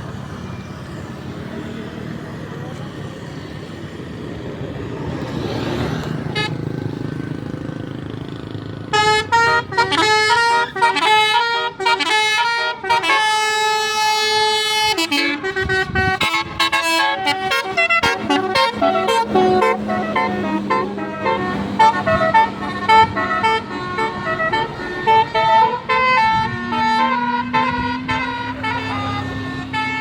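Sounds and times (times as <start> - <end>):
bus engine rumbling: 0.0 - 30.0
musical bus horn tune: 5.8 - 7.7, 8.8 - 30.0.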